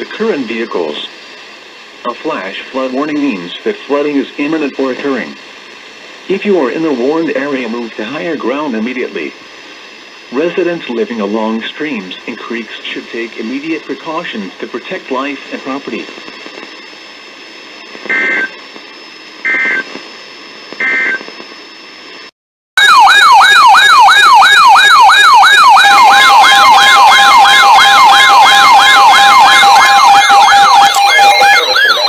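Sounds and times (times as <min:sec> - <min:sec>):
faint radio hiss: 0:00.0 - 0:22.3
buzzy data bursts: 0:10.2 - 0:19.9, 0:20.7 - 0:21.4
electronic siren yelping: 0:18.0 - 0:18.6, 0:19.4 - 0:19.9, 0:20.8 - 0:21.3, 0:22.8 - 0:32.0.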